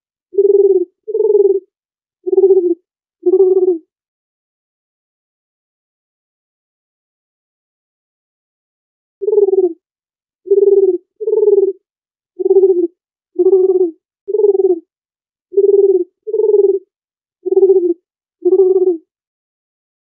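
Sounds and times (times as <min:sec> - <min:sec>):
dove cooing: 0:00.4 - 0:01.7, 0:02.3 - 0:03.8, 0:09.2 - 0:09.8, 0:10.5 - 0:11.8, 0:12.4 - 0:14.9, 0:15.5 - 0:19.1.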